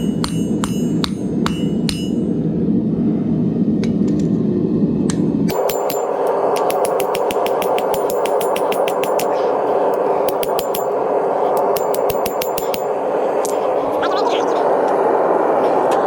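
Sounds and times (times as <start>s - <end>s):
gas burner flame roaring: 0.0s - 16.0s.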